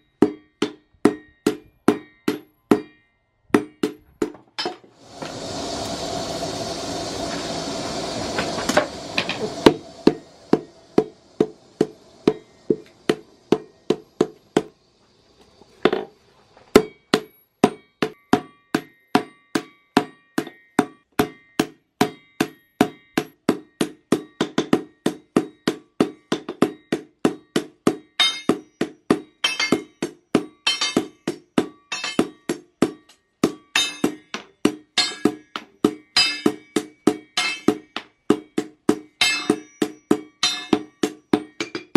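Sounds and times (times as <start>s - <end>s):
hammer ringing on anvil: 0.0s - 4.8s, 11.4s - 14.1s, 16.7s - 41.9s
steady rushing noise: 5.0s - 16.6s.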